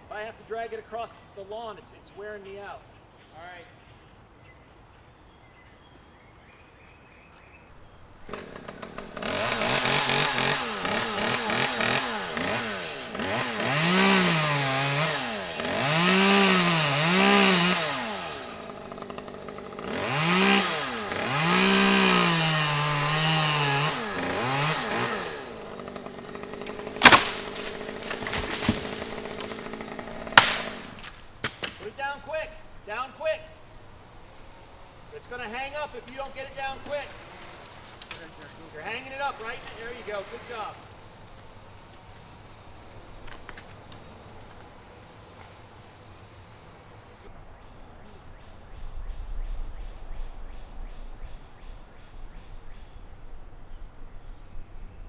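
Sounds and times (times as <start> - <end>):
chainsaw revving: 8.2 - 31.2, 36.1 - 41.0
sharp crack: 26.0 - 32.4, 35.7 - 40.7.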